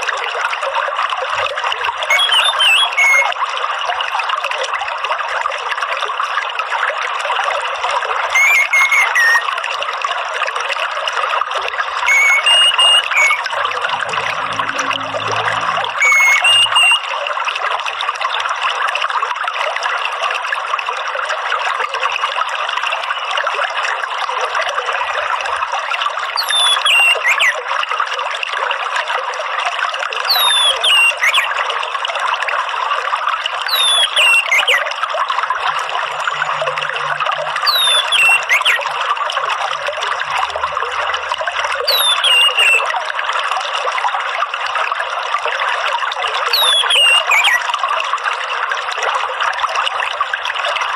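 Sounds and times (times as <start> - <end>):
water trickling: 0.0 - 50.9
falling whistled call: 2.1 - 3.3, 8.4 - 9.4, 12.1 - 17.0, 26.4 - 27.5, 30.3 - 31.5, 33.7 - 34.8, 37.6 - 38.8, 41.9 - 42.9, 46.5 - 47.6.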